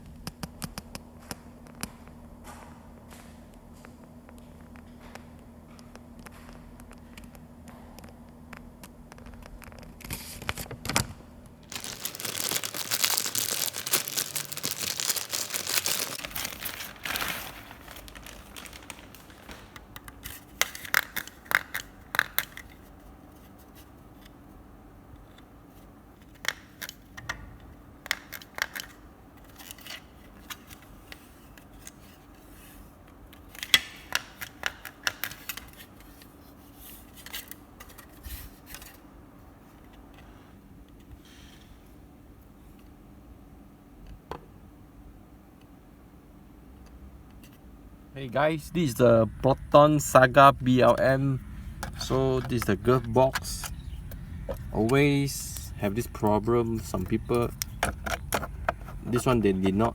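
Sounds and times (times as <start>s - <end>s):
rustling or tearing: 11.7s - 21.6s.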